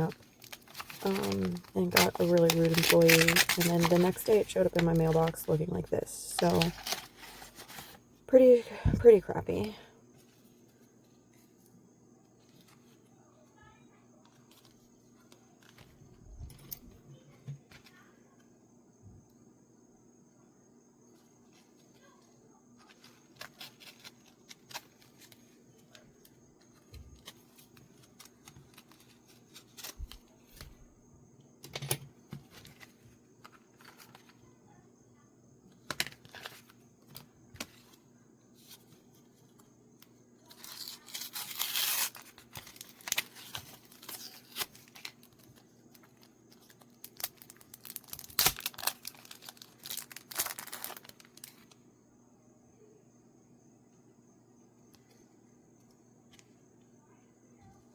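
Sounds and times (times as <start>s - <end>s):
paper packaging crinkling: 0.0s - 9.7s, 22.8s - 30.8s, 32.5s - 34.4s, 35.9s - 36.8s, 40.5s - 51.8s
paper tearing: 0.4s - 5.3s, 40.6s - 45.1s.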